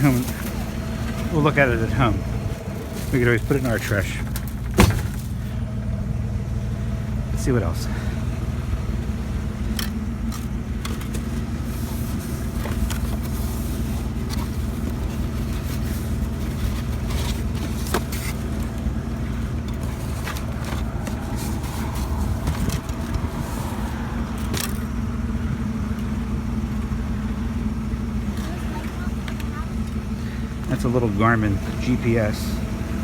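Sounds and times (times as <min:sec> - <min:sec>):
items being handled: 0:00.0 - 0:05.7, 0:09.6 - 0:24.9
vehicle engine idling: 0:00.0 - 0:33.0.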